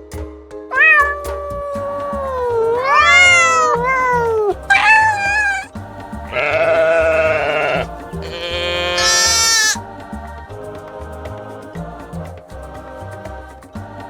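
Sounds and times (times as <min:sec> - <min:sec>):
background music with steady beat: 0:00.0 - 0:04.8, 0:05.6 - 0:14.0
sheep bleating: 0:02.7 - 0:09.8.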